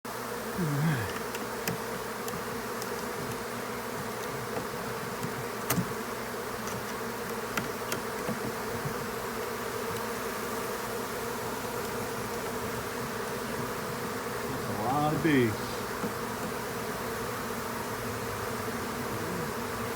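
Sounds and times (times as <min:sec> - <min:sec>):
bee passing close: 0:00.1 - 0:19.9
bees buzzing: 0:00.1 - 0:19.9.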